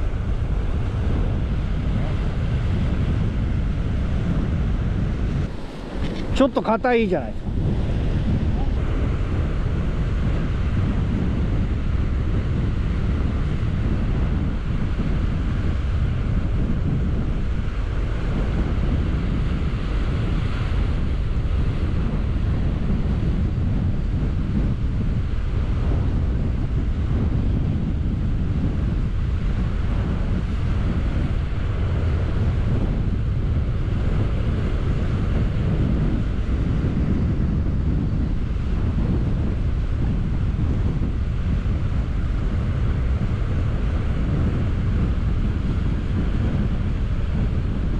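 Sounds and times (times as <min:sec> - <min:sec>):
sea surf against rocks: 0:00.0 - 0:27.4, 0:28.2 - 0:47.9
wind buffeting microphone: 0:00.0 - 0:47.9
sea surf breaking: 0:05.4 - 0:10.4.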